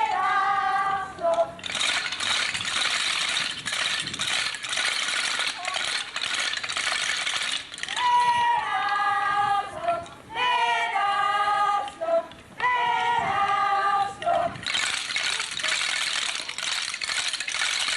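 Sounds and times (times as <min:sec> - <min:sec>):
sung chant: 0:00.0 - 0:01.8, 0:07.9 - 0:14.7
wooden clappers rattling: 0:01.2 - 0:08.4, 0:14.0 - 0:17.9.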